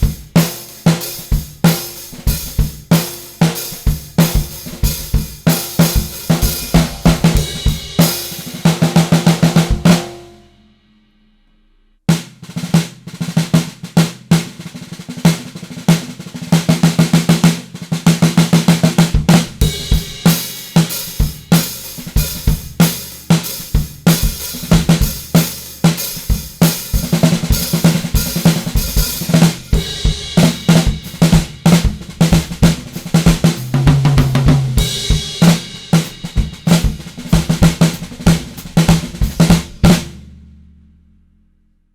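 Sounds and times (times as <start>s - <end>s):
bass drum beats: 0.0s - 10.4s, 21.2s - 40.2s
snare drum strokes and rolls: 0.0s - 10.4s, 12.1s - 40.3s.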